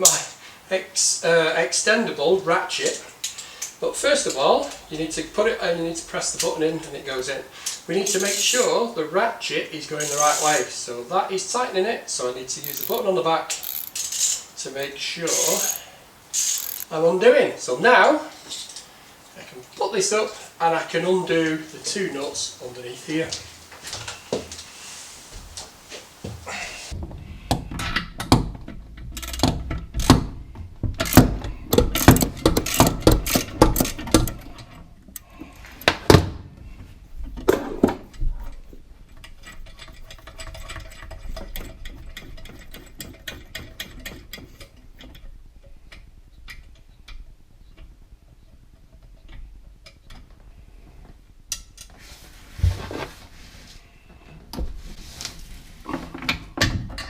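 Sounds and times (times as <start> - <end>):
ratchet wrench clicking: 7.6 - 8.6, 10.0 - 10.6, 12.6 - 14.5, 15.3 - 16.9, 31.8 - 34.4, 39.4 - 45.1
tool knocking against fittings: 30.9 - 34.4, 37.3 - 45.2.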